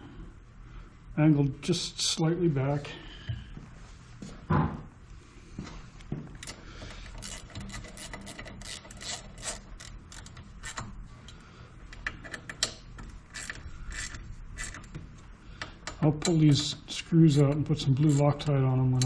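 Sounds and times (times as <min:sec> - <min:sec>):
ratchet wrench clicking: 0:06.4 - 0:10.9, 0:12.0 - 0:14.9.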